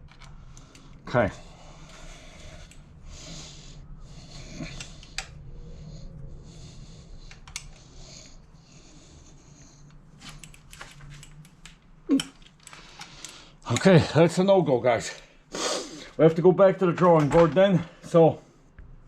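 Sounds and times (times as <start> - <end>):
person breathing with effort: 0.2 - 10.8, 12.2 - 14.1, 15.3 - 16.2.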